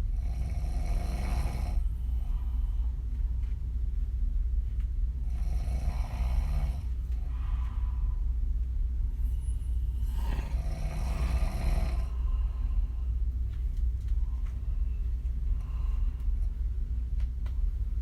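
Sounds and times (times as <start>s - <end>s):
steady low rumble: 0.0s - 18.0s
woman snoring: 0.2s - 1.9s, 5.3s - 7.0s, 9.2s - 12.2s.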